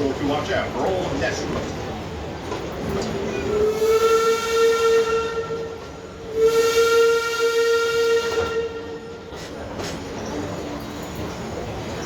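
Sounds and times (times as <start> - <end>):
train whistle blowing: 3.3 - 9.3.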